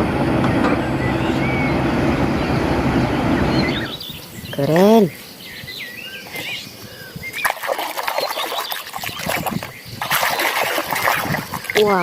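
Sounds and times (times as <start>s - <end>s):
small birds chirping: 0.8s - 2.7s, 3.3s - 12.0s
water splashing and sloshing: 6.2s - 12.0s.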